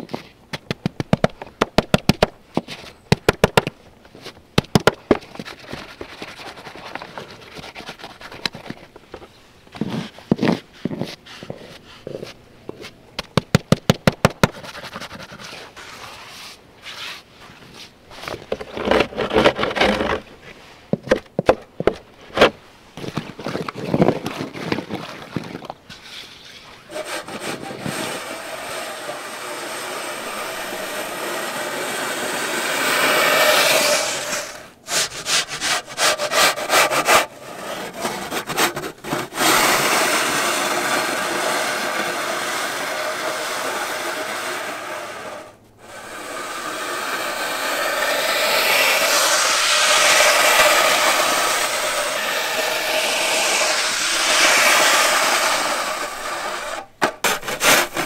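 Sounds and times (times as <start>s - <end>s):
scraping on ice: 22.4s - 58.0s
steady mechanical drone: 39.5s - 56.8s
skate clicks on ice: 46.5s - 58.0s.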